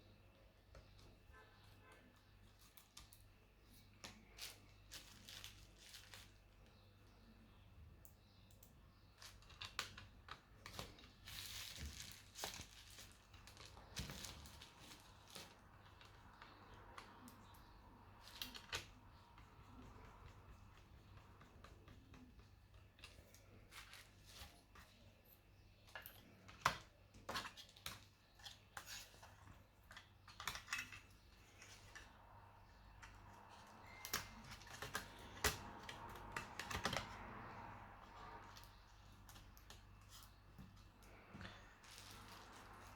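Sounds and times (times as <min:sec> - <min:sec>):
clicks of small laptop parts: 0:33.0 - 0:37.2.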